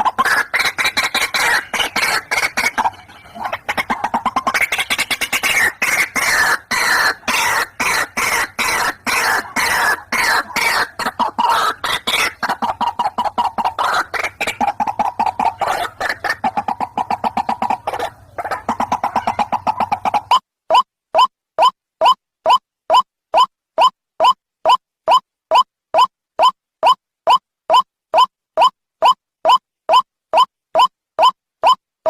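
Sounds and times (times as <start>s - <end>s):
waterhens calling harshly: 0.0s - 20.4s.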